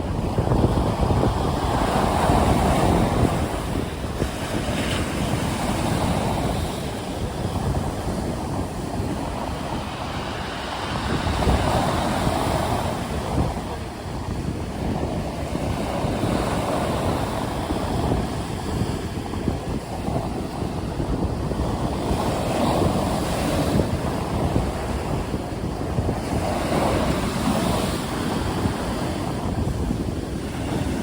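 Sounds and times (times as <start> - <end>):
waves washing: 0.0 - 31.0
wind blowing across microphone: 0.0 - 31.0.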